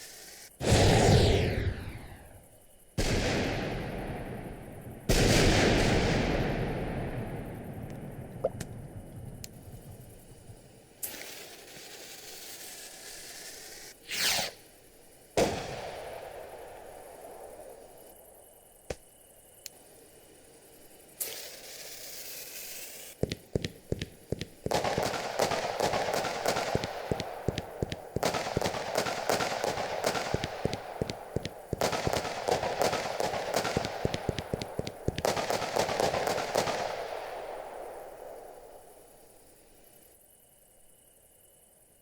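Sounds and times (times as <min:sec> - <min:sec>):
firework cracking and crackling: 0:22.7 - 0:37.0.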